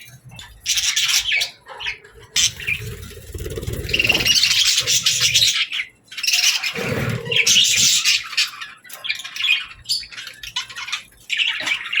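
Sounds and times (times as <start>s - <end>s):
budgerigars chattering and squawking: 0.5s - 12.0s.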